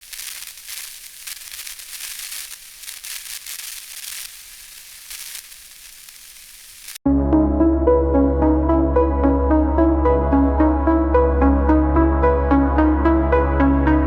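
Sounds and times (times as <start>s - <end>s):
crackling hiss: 0.0s - 7.0s.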